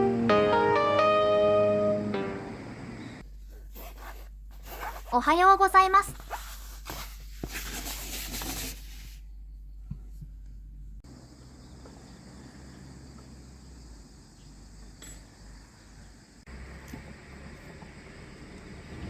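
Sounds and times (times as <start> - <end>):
faint insect chirping: 2.2 - 3.3, 9.2 - 19.0.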